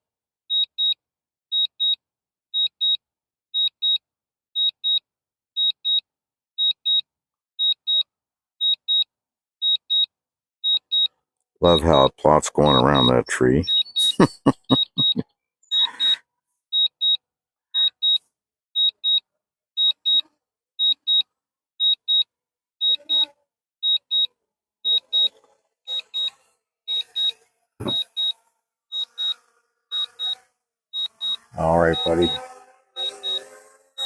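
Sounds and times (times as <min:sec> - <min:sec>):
short high double beeps: 0:11.6 - 0:15.2, 0:26.9 - 0:28.3, 0:31.0 - 0:33.5.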